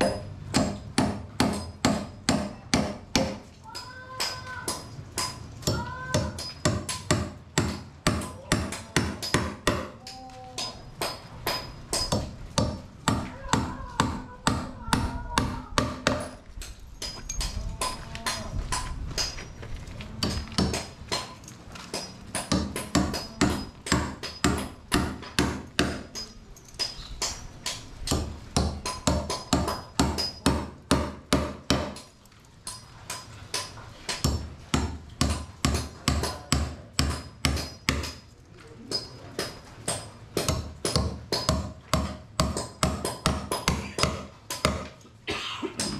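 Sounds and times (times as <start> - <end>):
hammer striking nails into wood: 0.0 - 3.5, 4.2 - 10.0, 11.0 - 16.4, 20.2 - 32.1, 33.1 - 38.2, 38.9 - 45.0.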